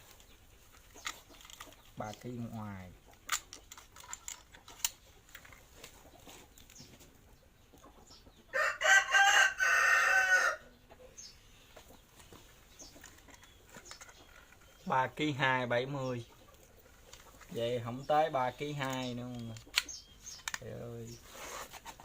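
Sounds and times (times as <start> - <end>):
rooster crowing: 8.5 - 10.7.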